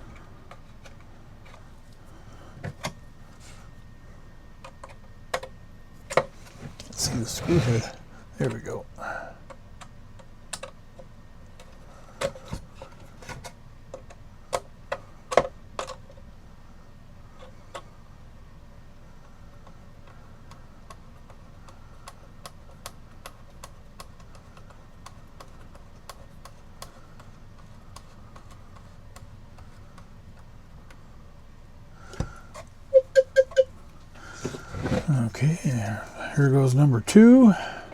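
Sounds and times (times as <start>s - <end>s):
clock ticking: 33.0s - 33.7s.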